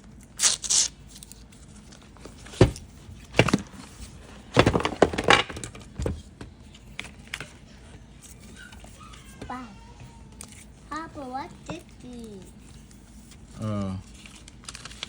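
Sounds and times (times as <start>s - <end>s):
packaging crinkling and rustling: 11.6s - 15.0s.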